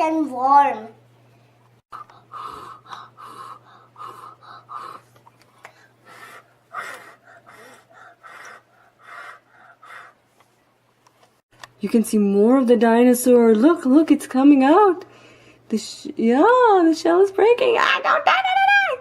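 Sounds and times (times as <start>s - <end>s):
person panting breathily: 1.9s - 10.3s.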